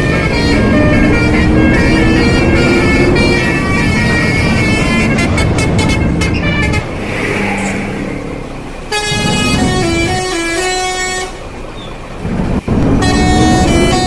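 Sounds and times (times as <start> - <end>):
multi-tone bus horn tune: 0.0 - 7.0, 8.9 - 11.6, 12.7 - 14.0
bus engine: 0.0 - 14.0.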